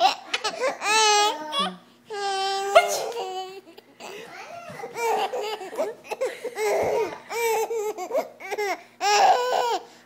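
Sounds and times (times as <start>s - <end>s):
baby laughing: 2.3s - 9.9s.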